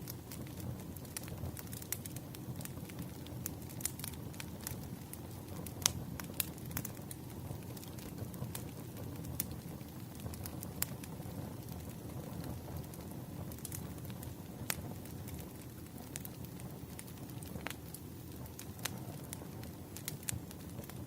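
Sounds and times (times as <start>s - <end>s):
low rumble of flames: 0.0s - 21.0s
wood fire crackling and popping: 0.0s - 21.0s.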